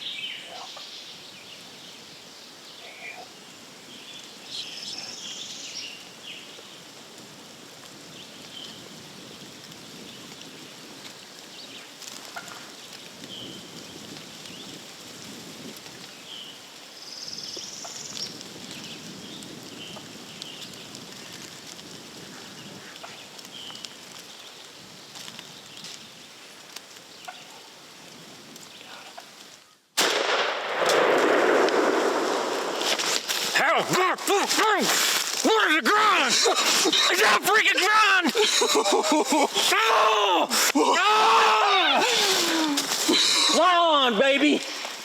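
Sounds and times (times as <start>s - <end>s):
soft rustling: 32.4s - 35.5s, 42.0s - 43.6s.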